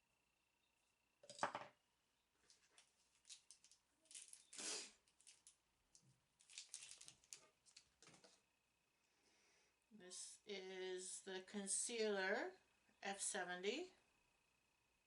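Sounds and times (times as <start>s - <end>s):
packaging rustling: 2.4s - 8.4s.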